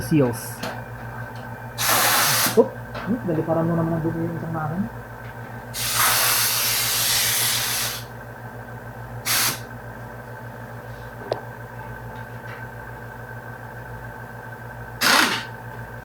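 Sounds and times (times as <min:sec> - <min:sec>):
steady low hum: 0:00.0 - 0:16.0
pressurised spray hissing: 0:01.8 - 0:02.6, 0:05.8 - 0:08.1, 0:09.2 - 0:09.7.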